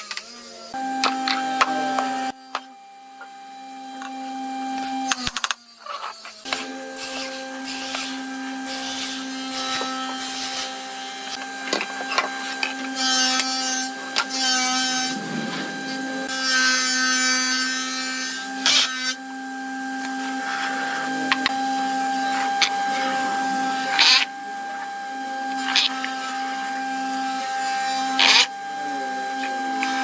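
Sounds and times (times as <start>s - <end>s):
power tool motor humming: 0.0s - 30.0s
wood cutting noise: 0.0s - 30.0s.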